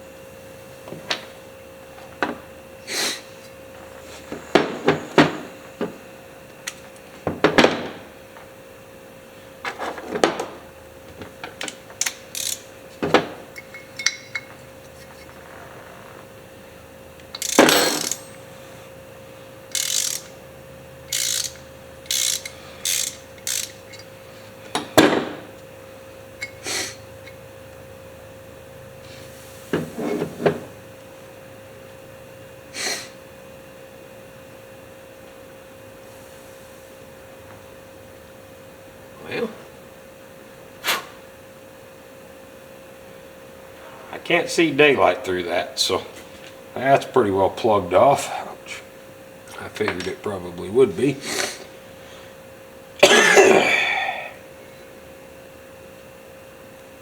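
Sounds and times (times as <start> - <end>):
metal parts clinking: 11.6 - 12.7, 13.6 - 15.4, 17.3 - 18.4, 19.7 - 20.4, 21.1 - 24.2.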